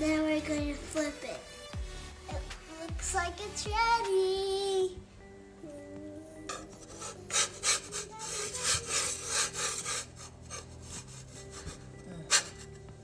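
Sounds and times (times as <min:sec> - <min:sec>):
spatula scraping a griddle: 0:06.5 - 0:12.9.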